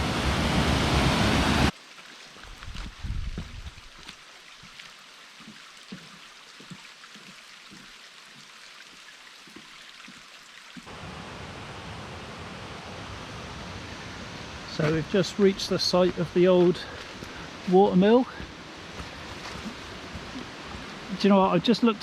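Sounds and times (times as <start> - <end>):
waterfall rushing: 0.0 - 1.7.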